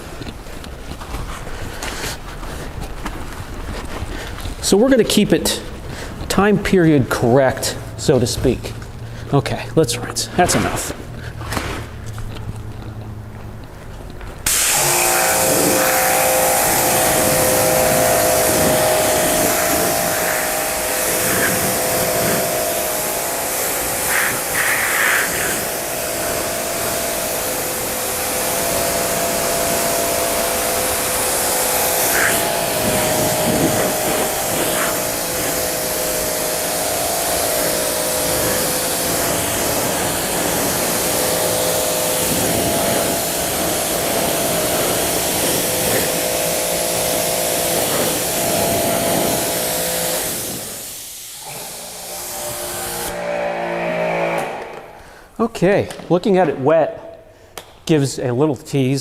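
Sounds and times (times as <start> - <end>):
water spray hissing on car: 14.4 - 52.7
pressure washer motor whine: 14.4 - 55.0.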